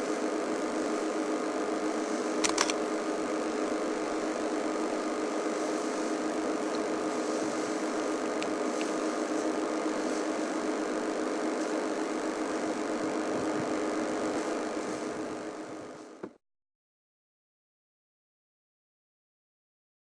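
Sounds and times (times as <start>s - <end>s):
steady mechanical hum: 0.0s - 16.4s
faint ticks: 8.3s - 9.0s.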